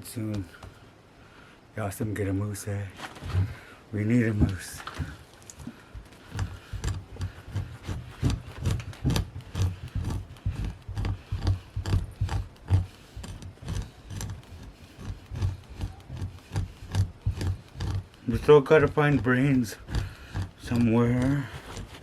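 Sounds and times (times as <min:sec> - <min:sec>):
hide scraping rasps with thuds: 0:02.9 - 0:22.0.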